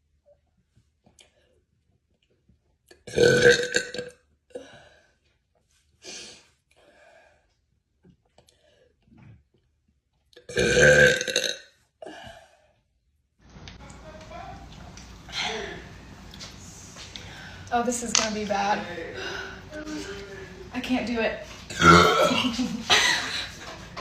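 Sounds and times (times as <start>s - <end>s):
woman burping: 3.1s - 4.1s, 10.5s - 12.4s, 21.7s - 23.4s.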